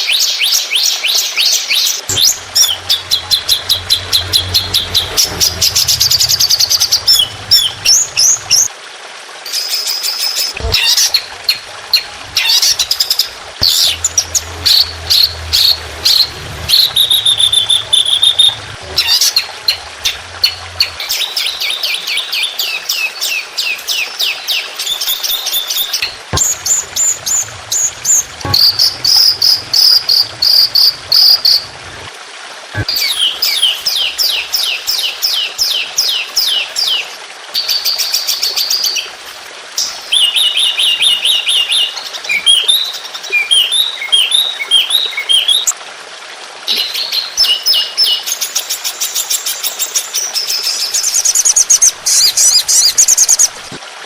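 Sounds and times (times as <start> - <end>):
songbird chirps and trills: 0.1 - 8.7.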